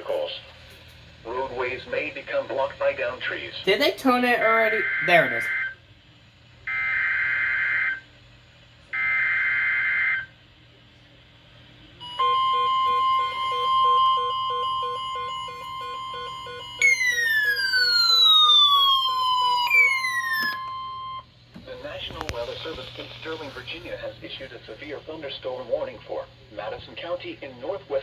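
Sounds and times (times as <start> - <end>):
steady warning alarm tone: 3.7 - 5.8, 6.7 - 8.0, 9.0 - 10.3, 12.0 - 22.1
harsh buzzing data bursts: 12.0 - 20.4
falling siren-like tone: 12.0 - 21.3
faint pulsing beeps: 12.0 - 22.0.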